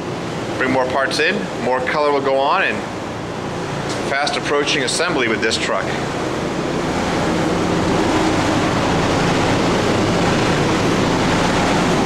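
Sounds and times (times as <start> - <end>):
ventilation fan humming: 0.0 - 12.0.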